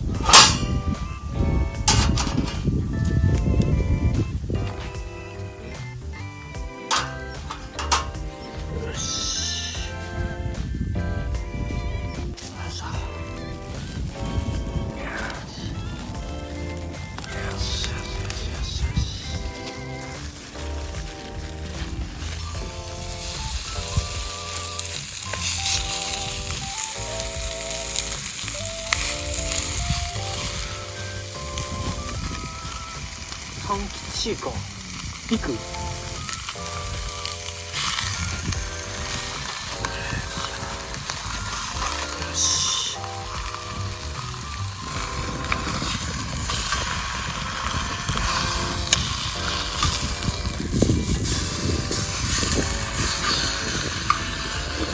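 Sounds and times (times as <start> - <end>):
synth chord music: 0.0 - 34.0
noisy hiss and crackle: 0.0 - 54.9
ribs sizzling in a pan: 0.0 - 54.9.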